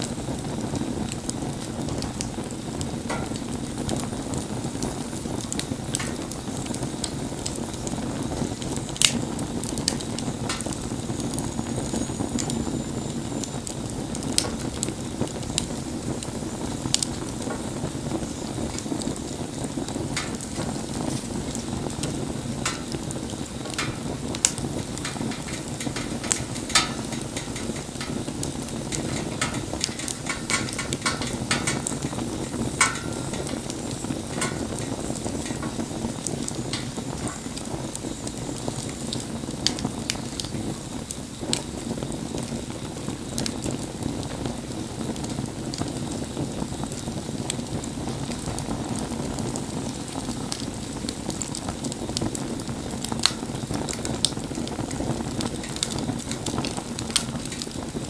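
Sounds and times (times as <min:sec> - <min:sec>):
bonfire burning and crackling: 0:00.0 - 0:58.0.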